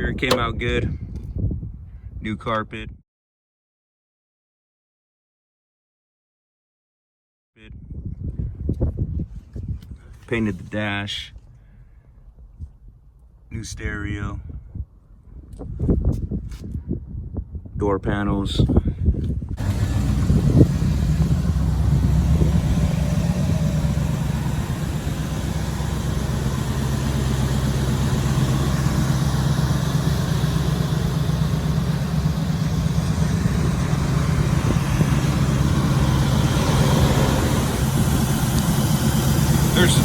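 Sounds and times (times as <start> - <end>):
car engine idling: 19.6 - 40.0.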